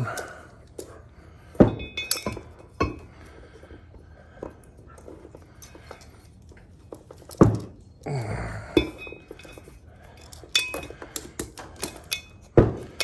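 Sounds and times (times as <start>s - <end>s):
metal parts clanking: 1.5s - 3.4s, 8.6s - 13.0s.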